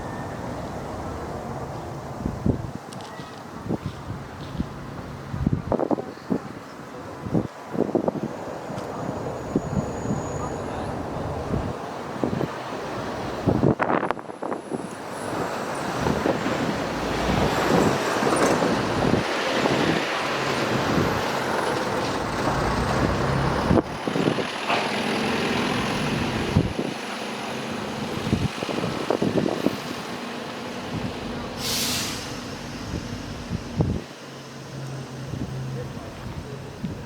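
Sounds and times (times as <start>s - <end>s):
heavy vehicle running: 3.6s - 37.0s
air-brake hiss: 31.4s - 35.1s.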